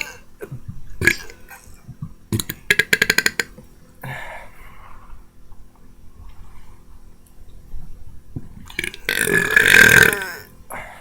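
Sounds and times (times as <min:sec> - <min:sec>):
man burping: 0:00.0 - 0:01.8, 0:08.8 - 0:10.6
breathy sound: 0:04.0 - 0:05.4.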